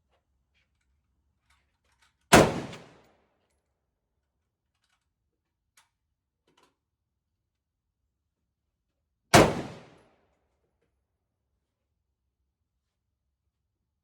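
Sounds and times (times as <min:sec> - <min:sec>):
loud rifle shot echoing: 0:02.3 - 0:03.0, 0:09.4 - 0:10.0.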